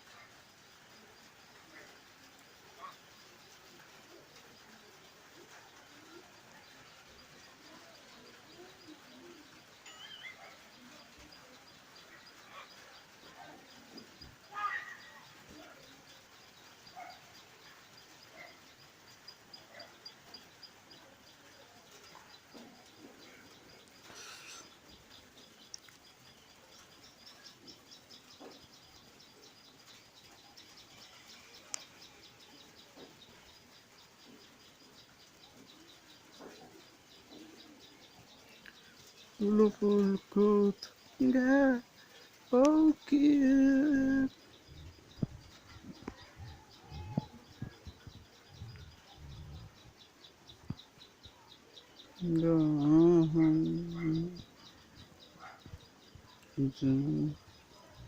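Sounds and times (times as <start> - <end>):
bird cooing: 7.5 - 11.6, 35.5 - 38.3
high bird chirp: 9.8 - 10.8, 22.2 - 58.0.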